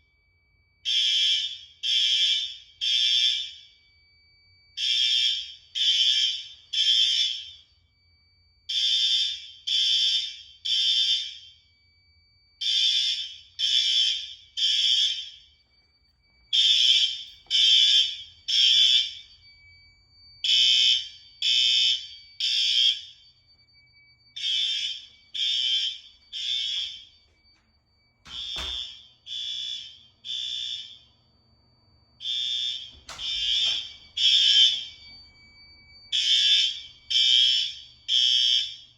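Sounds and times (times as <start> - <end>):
faint steady tone: 0.0 - 0.8, 3.6 - 4.8, 7.4 - 8.7, 11.4 - 12.6, 19.1 - 20.4
fire alarm horn blasts: 0.0 - 38.9.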